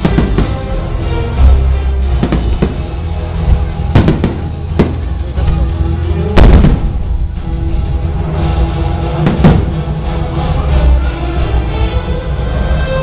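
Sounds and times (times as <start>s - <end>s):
fireworks bursting: 0.0s - 0.7s, 2.1s - 5.6s, 6.3s - 7.3s, 9.2s - 10.0s
loud music: 0.0s - 13.0s.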